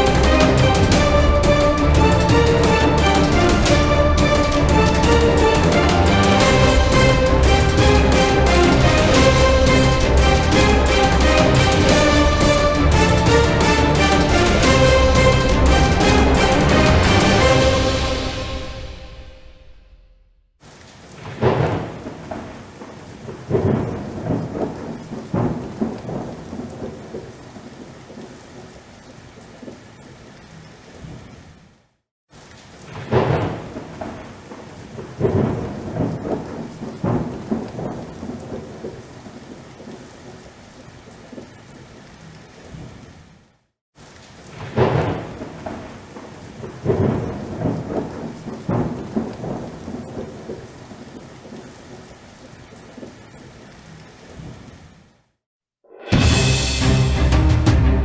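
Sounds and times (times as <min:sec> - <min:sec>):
heavy rain hissing: 0:00.0 - 0:20.0, 0:32.3 - 0:43.4, 0:44.0 - 0:55.0, 0:56.1 - 0:58.0
thunder rumbling: 0:00.0 - 0:20.2, 0:21.2 - 0:28.2, 0:32.9 - 0:40.2, 0:44.6 - 0:52.3.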